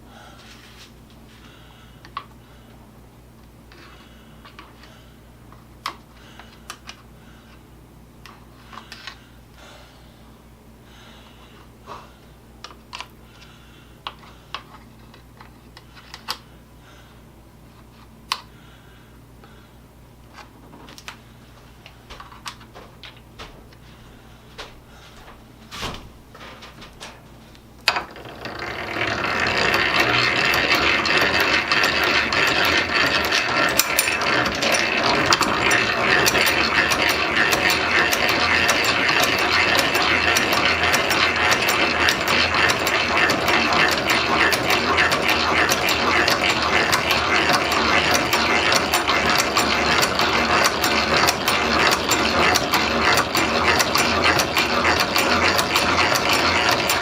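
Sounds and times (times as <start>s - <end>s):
hand drill gears clattering: 27.9s - 57.0s.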